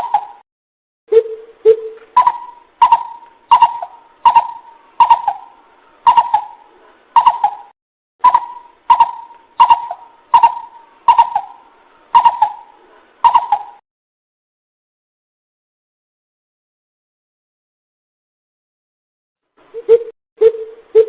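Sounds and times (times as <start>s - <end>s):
bird hooting calls: 0.0s - 0.4s, 1.1s - 6.6s, 7.2s - 13.8s, 19.7s - 21.0s.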